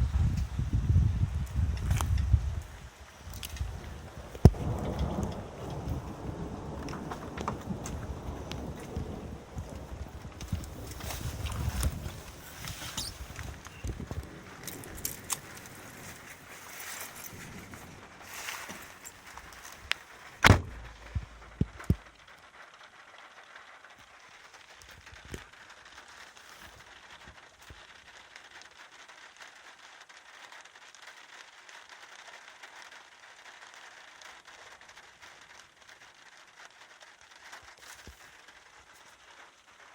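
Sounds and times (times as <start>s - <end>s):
heavy rain: 0.0s - 39.9s
sharp knocks: 20.4s - 22.0s.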